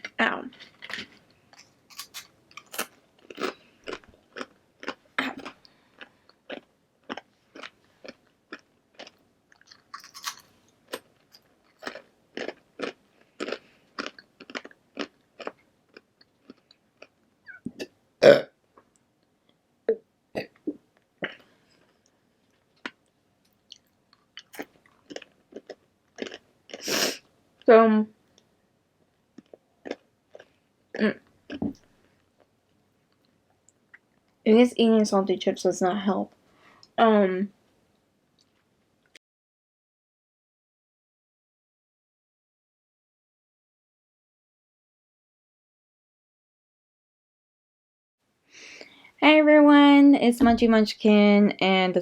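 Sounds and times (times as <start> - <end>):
chewing and crunching chips: 0.0 - 17.2, 21.3 - 26.9, 29.4 - 30.6
burp: 17.6 - 18.6, 20.4 - 21.4.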